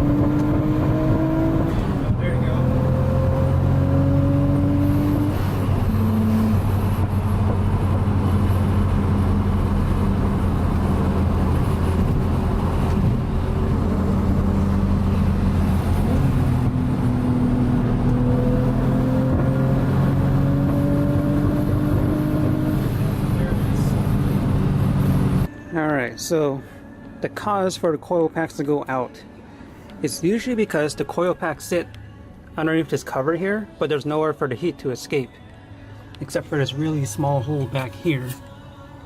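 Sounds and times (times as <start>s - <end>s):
car engine running: 0.0s - 25.5s.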